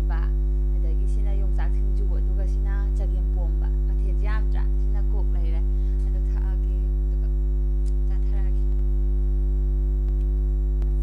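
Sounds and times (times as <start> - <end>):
loud electrical hum: 0.0 - 11.0.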